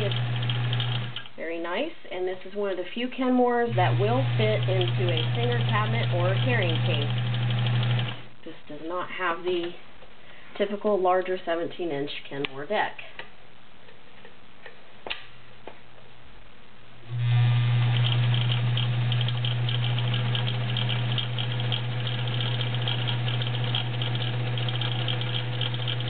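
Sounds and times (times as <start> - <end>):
sewing machine running: 0.0 - 1.3, 3.7 - 8.3, 17.1 - 26.0.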